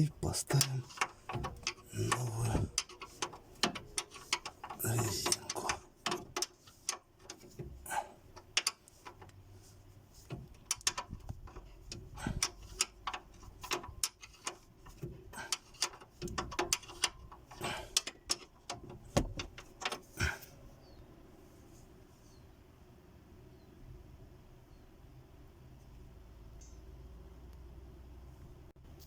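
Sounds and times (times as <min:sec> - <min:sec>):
spanner clinking on a bolt: 0:00.0 - 0:09.4, 0:10.2 - 0:20.5.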